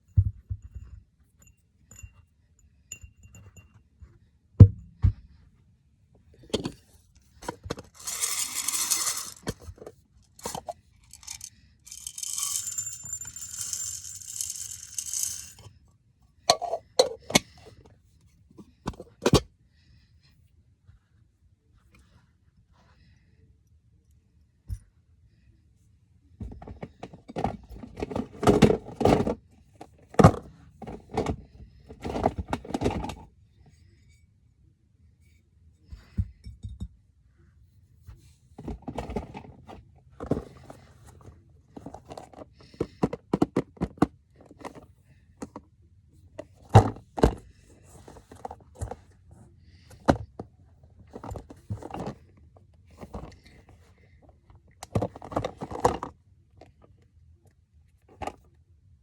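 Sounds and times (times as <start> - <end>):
hard objects knocking and scraping: 7.7 - 9.7, 10.3 - 15.7.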